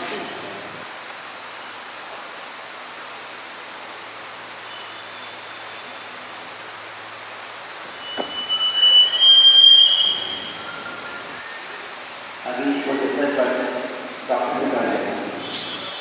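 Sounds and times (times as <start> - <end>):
steady background hiss: 0.0 - 16.0
high-pitched squeal: 8.0 - 11.9.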